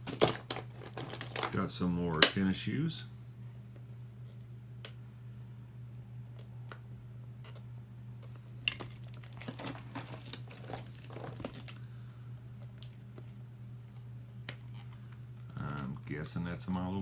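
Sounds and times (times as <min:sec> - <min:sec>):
toys rustling in a box: 0:00.0 - 0:01.6, 0:08.2 - 0:11.9
steady low hum: 0:00.0 - 0:17.0.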